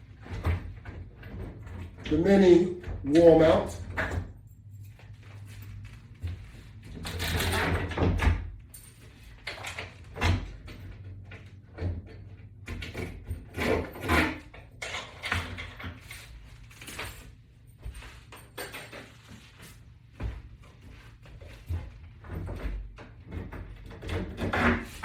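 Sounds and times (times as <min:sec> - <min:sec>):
metal latch knocking and scraping: 0:09.4 - 0:16.1.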